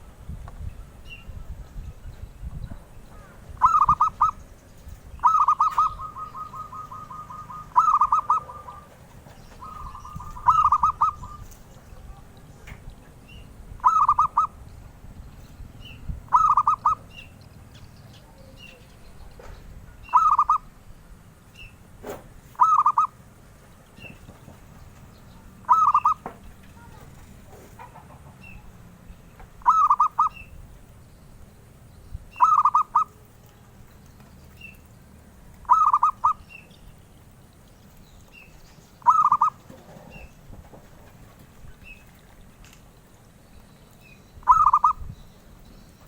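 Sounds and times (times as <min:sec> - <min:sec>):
dove cooing: 0:03.1 - 0:04.4, 0:05.1 - 0:12.2, 0:13.8 - 0:14.6, 0:16.3 - 0:17.1, 0:20.0 - 0:20.7, 0:22.6 - 0:23.2, 0:25.6 - 0:28.7, 0:29.6 - 0:30.5, 0:32.4 - 0:33.5, 0:35.6 - 0:36.5, 0:39.0 - 0:40.4, 0:44.4 - 0:45.1.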